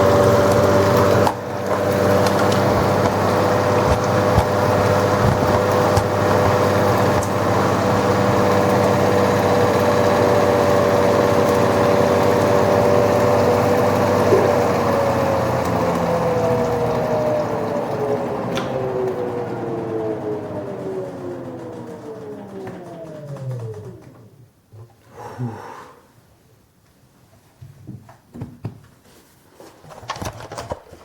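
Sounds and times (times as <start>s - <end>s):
washing machine spinning: 0.0s - 24.5s.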